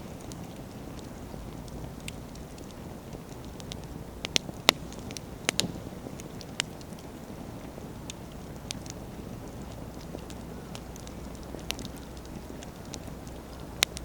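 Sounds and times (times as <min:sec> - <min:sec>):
bonfire flame rumbling: 0:00.0 - 0:14.0
burning logs crackling and popping: 0:00.0 - 0:14.0.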